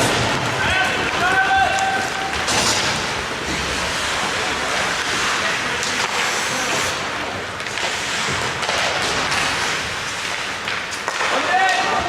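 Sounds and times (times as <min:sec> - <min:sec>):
hockey sticks and puck clacking: 0:00.0 - 0:12.0
skate blades scraping ice: 0:00.0 - 0:12.0.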